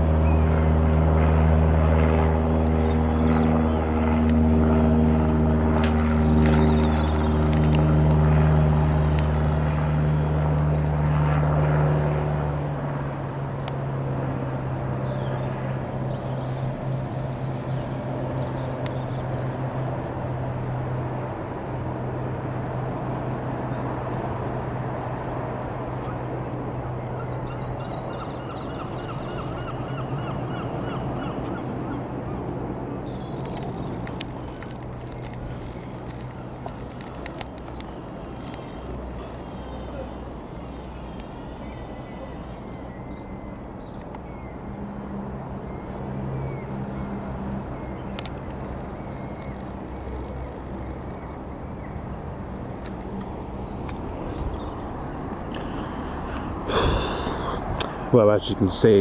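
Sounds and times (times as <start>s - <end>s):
propeller plane engine droning: 0.0s - 59.0s
repeated bird calls: 26.8s - 44.8s, 45.4s - 59.0s
small birds chirping: 26.8s - 44.8s, 45.4s - 59.0s.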